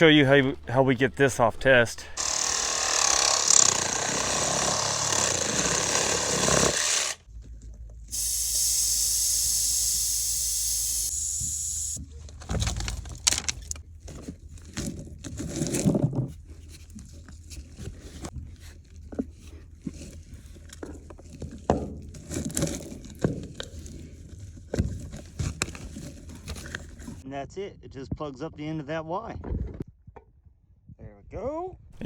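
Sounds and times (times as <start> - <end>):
compressed air hissing: 8.1 - 12.4
knocks and scraping: 11.4 - 27.2.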